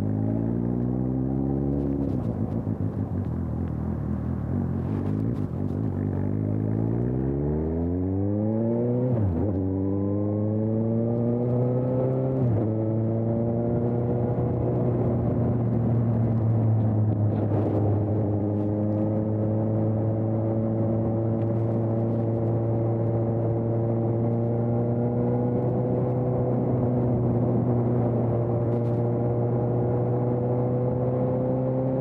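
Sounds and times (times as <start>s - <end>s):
motorcycle engine running: 0.0s - 7.3s.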